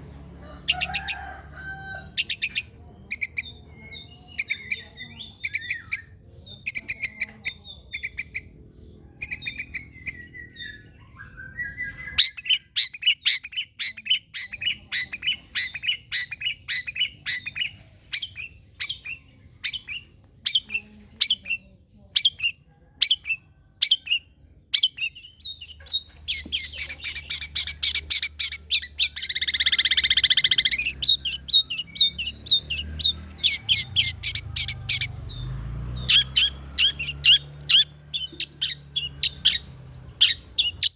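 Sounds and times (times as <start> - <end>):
bird chattering song: 0.0 - 40.9
harsh rasping bird call: 25.0 - 40.9.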